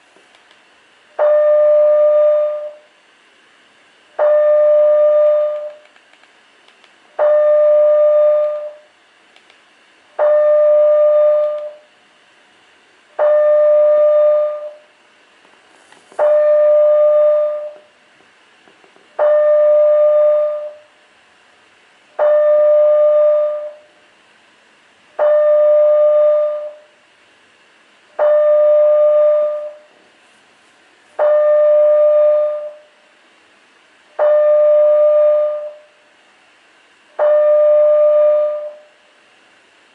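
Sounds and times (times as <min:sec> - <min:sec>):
fire alarm horn tone: 0:01.2 - 0:02.9, 0:04.2 - 0:05.8, 0:07.2 - 0:08.9, 0:10.2 - 0:11.9, 0:13.2 - 0:14.9, 0:16.2 - 0:17.8, 0:19.2 - 0:20.9, 0:22.2 - 0:23.9, 0:25.2 - 0:26.9, 0:28.2 - 0:29.9, 0:31.2 - 0:32.9, 0:34.2 - 0:35.9, 0:37.2 - 0:38.9.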